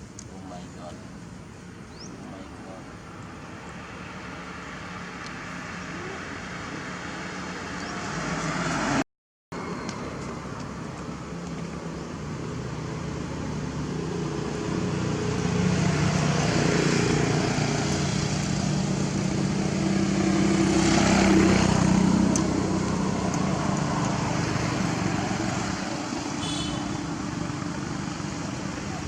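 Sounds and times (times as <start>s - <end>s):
vehicle engine passing by: 3.5s - 9.0s, 12.3s - 29.0s.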